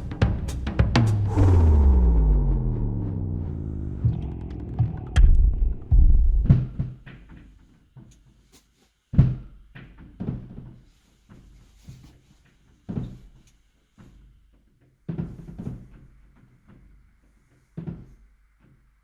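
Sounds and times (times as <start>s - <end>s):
heavy thuds and knocks: 0.2s - 7.0s.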